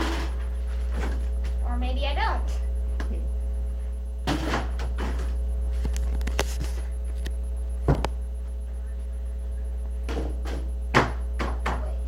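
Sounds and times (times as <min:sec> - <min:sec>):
steady low hum: 0:00.0 - 0:12.0
scuffs and shuffles: 0:05.7 - 0:07.2
basketball double thud: 0:07.8 - 0:08.2.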